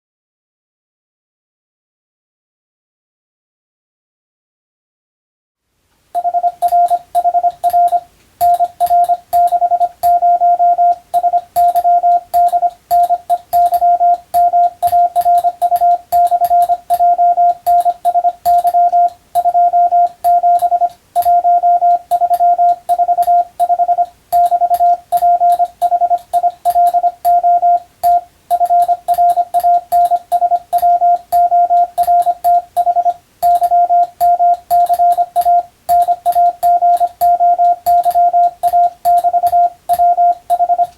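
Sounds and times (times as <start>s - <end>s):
morse code sidetone beeping: 6.2s - 40.9s
telegraph key clicks: 10.9s - 27.4s, 28.0s - 40.9s.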